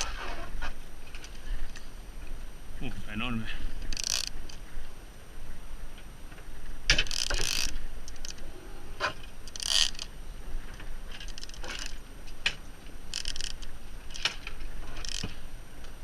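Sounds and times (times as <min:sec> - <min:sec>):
fishing reel gears clicking: 0:03.8 - 0:04.6, 0:07.0 - 0:08.4, 0:09.4 - 0:10.1, 0:11.2 - 0:12.0, 0:13.1 - 0:14.3, 0:15.0 - 0:15.3.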